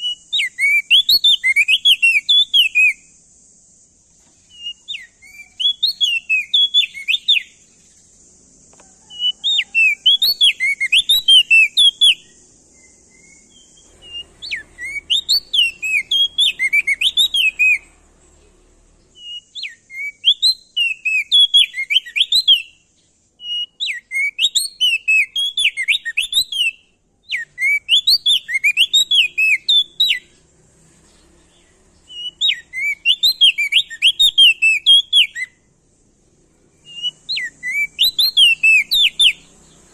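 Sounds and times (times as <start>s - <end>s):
bird singing whistled notes: 0.0s - 35.8s, 36.7s - 39.9s
faint high hiss: 0.0s - 39.9s.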